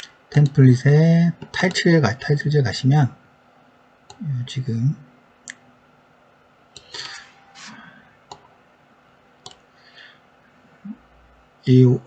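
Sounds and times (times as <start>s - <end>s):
computer mouse clicking: 6.8s - 7.0s, 8.3s - 8.5s, 9.4s - 9.6s.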